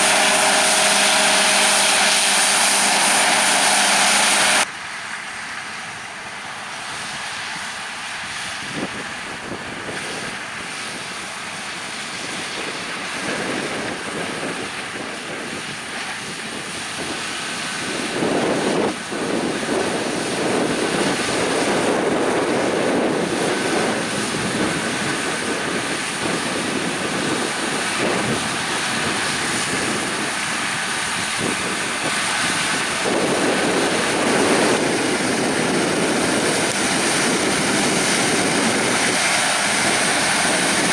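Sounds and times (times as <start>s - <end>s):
harvest machinery engine drone: 0.0s - 6.4s, 17.3s - 40.9s.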